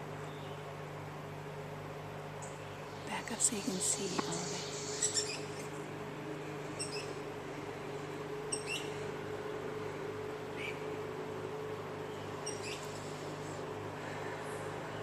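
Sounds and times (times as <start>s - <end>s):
steady low hum: 0.0s - 15.0s
finch chirping: 2.4s - 5.6s, 6.8s - 7.2s, 8.5s - 9.0s, 12.1s - 12.9s.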